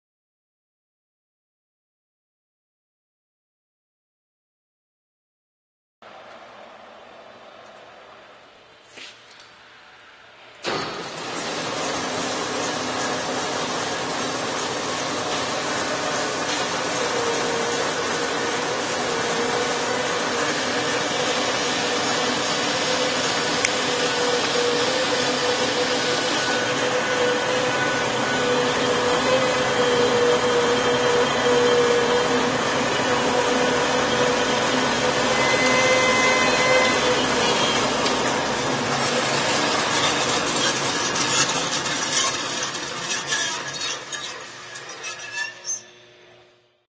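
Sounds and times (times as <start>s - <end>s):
band saw running: 10.6s - 46.8s.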